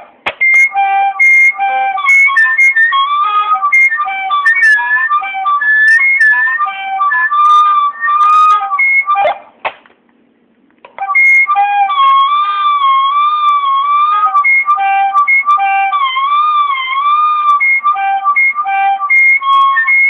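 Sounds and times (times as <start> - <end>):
walkie-talkie electronic tones: 0.4 - 6.7, 10.9 - 11.9, 17.4 - 20.0.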